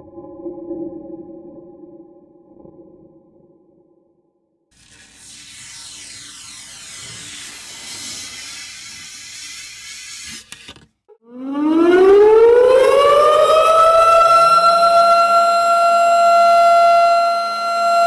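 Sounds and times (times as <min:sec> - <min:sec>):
hissing rush: 0:04.8 - 0:10.5
air-raid siren wailing: 0:11.2 - 0:18.0.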